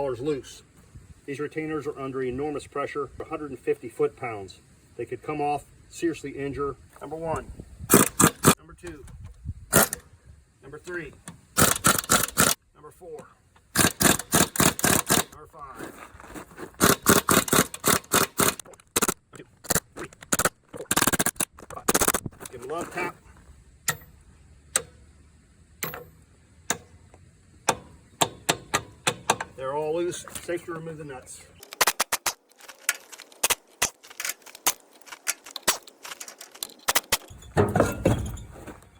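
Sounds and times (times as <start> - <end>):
metal wheel nuts clinking: 16.8 - 20.4, 23.8 - 24.2, 25.8 - 27.0, 32.5 - 38.9.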